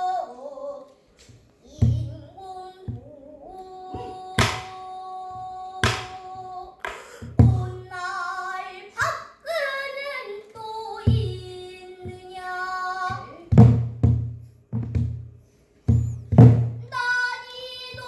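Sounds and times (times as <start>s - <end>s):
child singing: 0.0s - 15.0s, 15.9s - 18.0s
barrel drum strokes: 1.2s - 3.2s, 3.9s - 8.2s, 10.6s - 17.2s.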